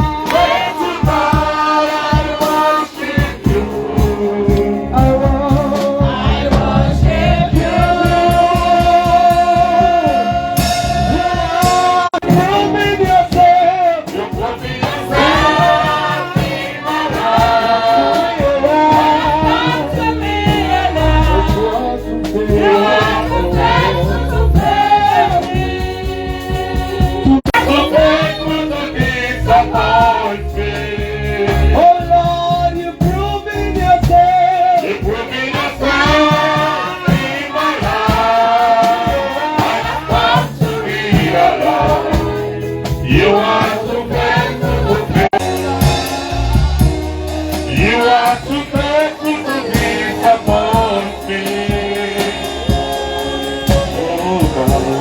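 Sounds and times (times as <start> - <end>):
band with beat and bass: 0.0 - 55.0
gospel singers: 0.0 - 55.0.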